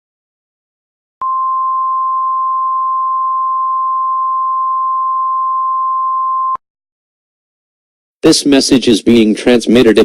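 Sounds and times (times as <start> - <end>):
steady electronic sine tone: 1.2 - 6.6.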